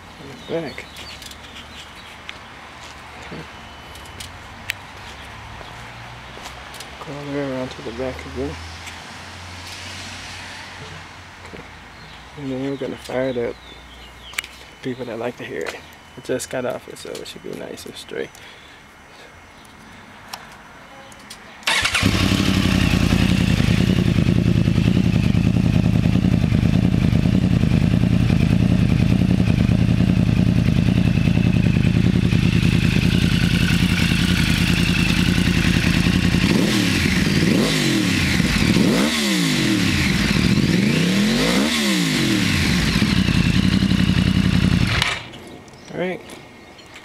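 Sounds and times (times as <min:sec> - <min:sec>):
motorcycle engine idling: 0:21.7 - 0:38.9, 0:39.7 - 0:41.3, 0:42.1 - 0:45.3.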